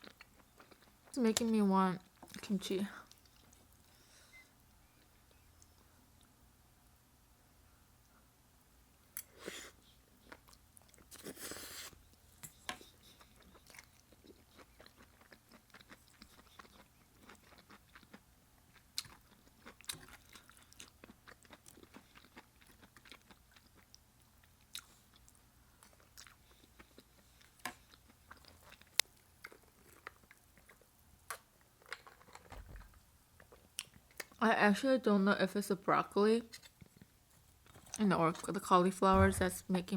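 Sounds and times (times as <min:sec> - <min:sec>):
chewing and crunching vegetables: 0:00.0 - 0:03.9, 0:09.1 - 0:34.4.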